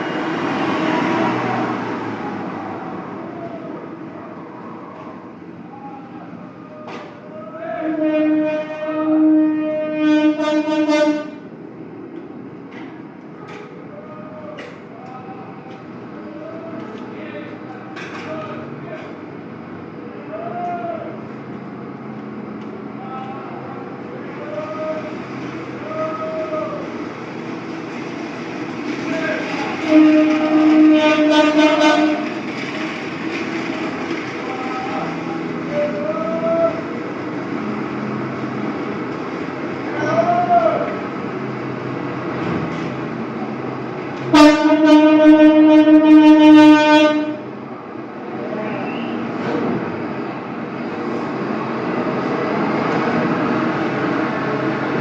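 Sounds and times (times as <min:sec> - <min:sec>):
vehicle horn blast: 0:07.8 - 0:11.4, 0:29.9 - 0:32.2, 0:44.3 - 0:47.4
garbage truck engine humming: 0:21.1 - 0:55.0.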